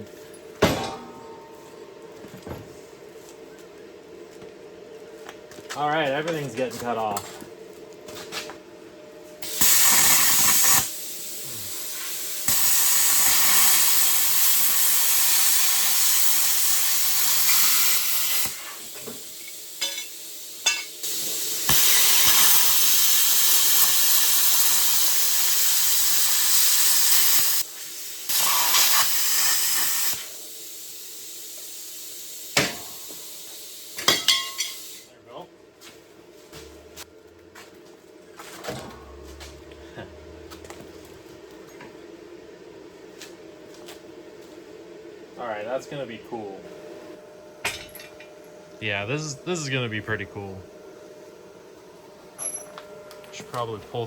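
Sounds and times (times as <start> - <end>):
plasma cutter hissing through steel: 9.4 - 35.1.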